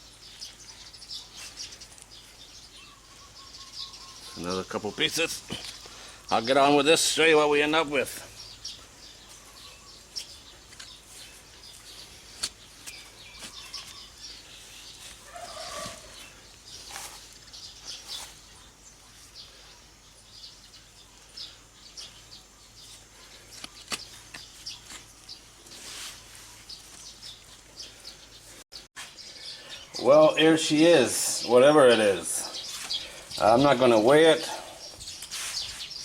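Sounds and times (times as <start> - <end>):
small birds chirping: 0.0 - 36.0
fowl calling: 15.2 - 16.4.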